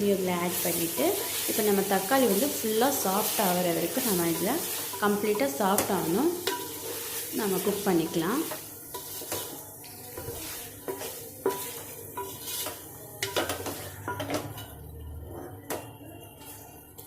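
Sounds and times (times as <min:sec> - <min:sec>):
light sizzle: 0:00.0 - 0:17.0
spoon scraping in cooking pot: 0:04.1 - 0:16.6.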